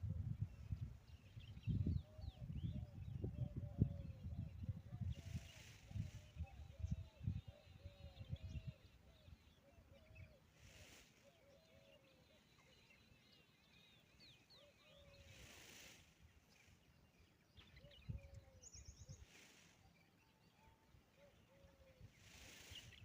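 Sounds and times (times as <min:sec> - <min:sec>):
small birds chirping: 0:00.0 - 0:23.0
soft rushes of noise: 0:05.0 - 0:06.4, 0:10.5 - 0:11.4, 0:15.1 - 0:17.1, 0:19.0 - 0:20.3, 0:22.0 - 0:23.0.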